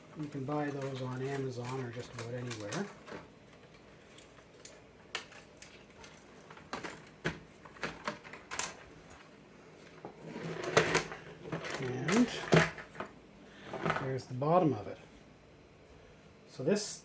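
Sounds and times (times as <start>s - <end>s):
small plastic parts clicking and rattling: 0.1s - 9.3s.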